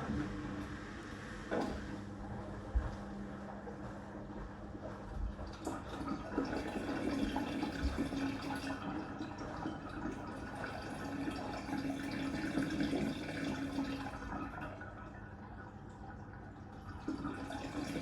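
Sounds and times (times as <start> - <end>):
washing machine hum: 0.0 - 18.0
water sloshing in washing machine drum: 5.0 - 18.0.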